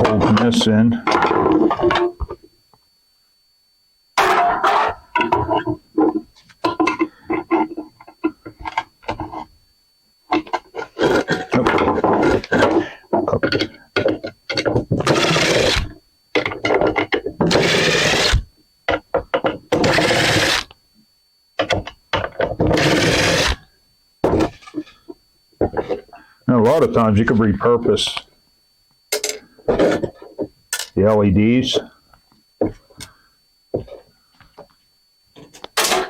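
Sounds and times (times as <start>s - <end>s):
metal parts scraping and rubbing: 4.2s - 9.5s, 10.3s - 18.4s.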